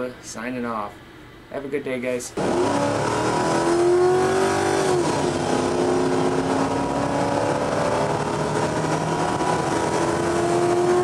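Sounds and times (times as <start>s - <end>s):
car engine at high revs: 2.4s - 11.0s.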